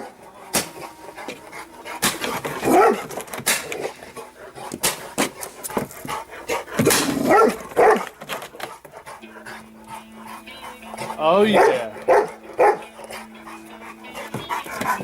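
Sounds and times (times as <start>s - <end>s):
dog barking: 2.1s - 3.1s, 7.1s - 8.2s, 11.5s - 13.0s
sharp cracks: 3.0s - 3.9s, 6.8s - 8.6s.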